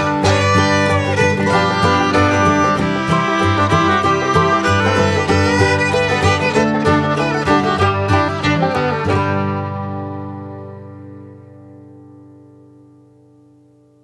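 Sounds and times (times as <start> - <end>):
bluegrass music with banjo and fiddle: 0.0 - 10.9.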